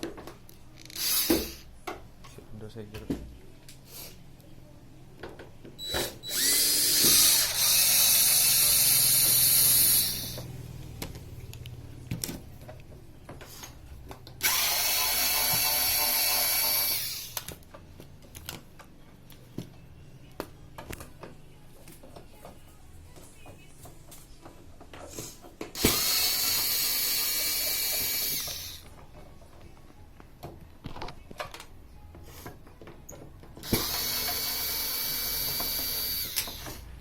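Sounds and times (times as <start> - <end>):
screws and tools clicking: 0.7 - 1.7, 5.8 - 10.4, 14.4 - 17.6, 25.8 - 28.9, 33.6 - 36.8
power drill whirring: 0.8 - 1.7, 5.8 - 10.5, 14.4 - 17.5, 25.8 - 28.9, 33.6 - 36.8.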